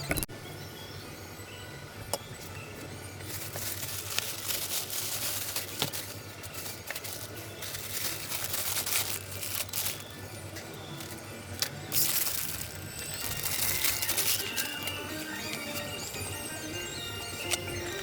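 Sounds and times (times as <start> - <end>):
rustling and crackling: 3.3 - 10.2, 11.0 - 15.0.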